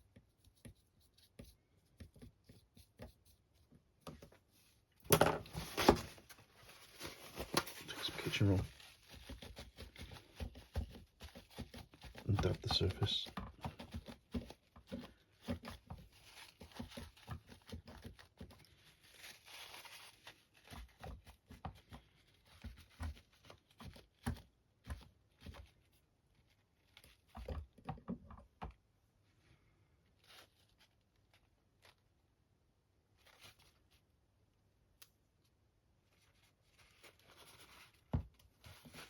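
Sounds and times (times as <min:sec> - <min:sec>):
kitchen roll dabbing and rustling: 0:00.0 - 0:39.0.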